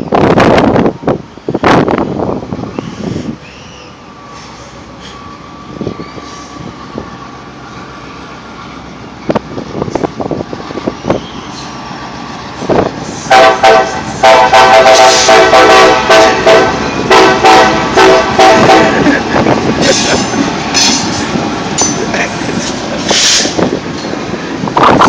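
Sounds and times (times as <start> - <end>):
locomotive air horn blasts: 13.2 - 19.2.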